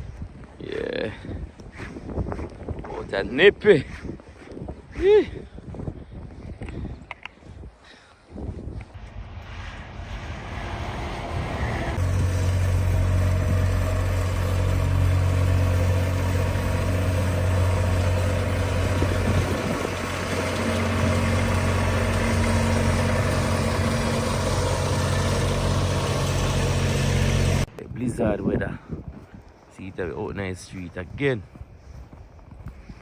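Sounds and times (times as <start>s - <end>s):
car engine idling: 12.0s - 27.7s.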